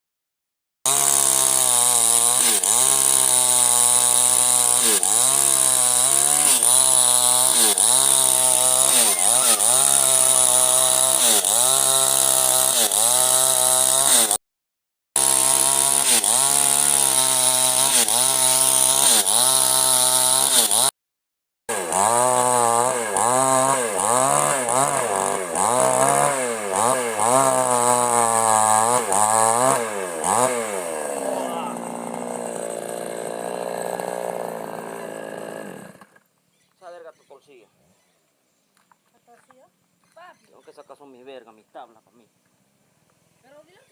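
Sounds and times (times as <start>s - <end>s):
chainsaw cutting wood: 0.9s - 14.4s, 15.2s - 21.0s, 21.7s - 36.4s.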